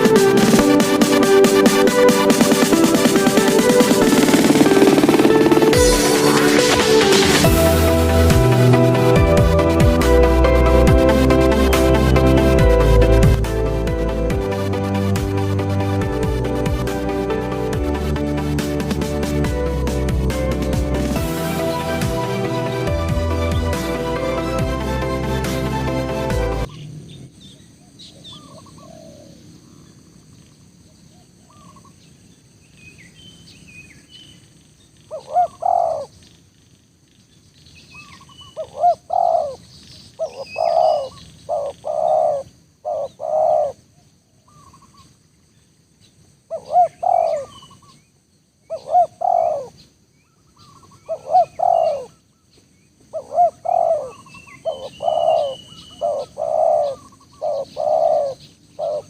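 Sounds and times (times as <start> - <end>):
small birds chirping: 26.6 - 43.8, 44.4 - 59.0
dove cooing: 35.1 - 36.1, 38.6 - 39.6, 40.2 - 43.8, 46.5 - 47.5, 48.7 - 49.7, 51.1 - 52.1, 53.2 - 59.0.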